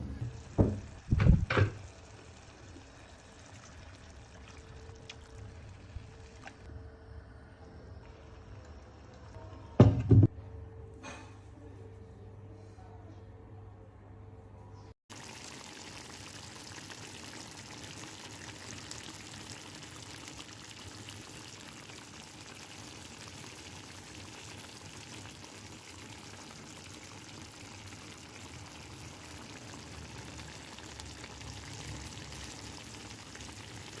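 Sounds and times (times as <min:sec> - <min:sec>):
food sizzling in a pan: 0:15.1 - 0:34.0.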